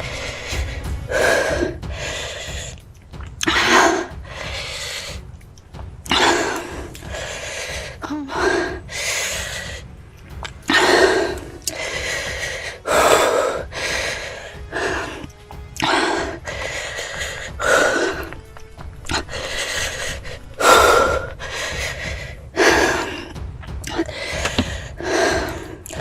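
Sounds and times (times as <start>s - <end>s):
person gasping and breathing hard: 6.0s - 9.9s, 10.6s - 26.0s.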